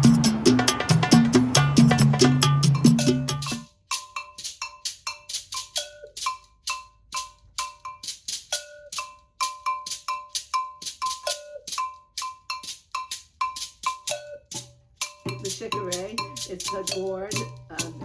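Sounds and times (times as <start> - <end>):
iron double bell struck with stick: 0.0 - 3.6.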